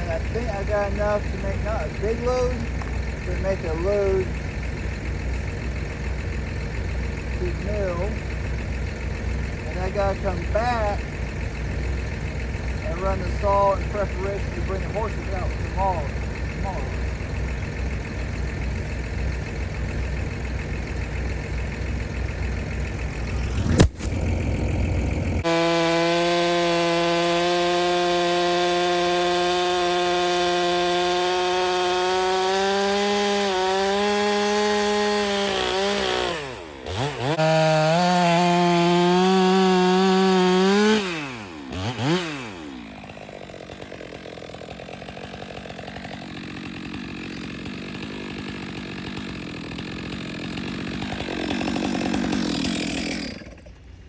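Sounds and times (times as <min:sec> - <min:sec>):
low engine rumble: 0:00.0 - 0:25.5, 0:50.9 - 0:54.0
chainsaw running at high revs: 0:00.0 - 0:54.0.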